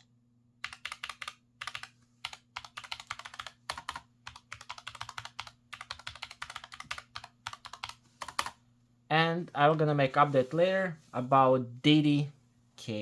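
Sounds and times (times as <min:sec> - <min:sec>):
mechanical keyboard typing: 0:00.6 - 0:08.6.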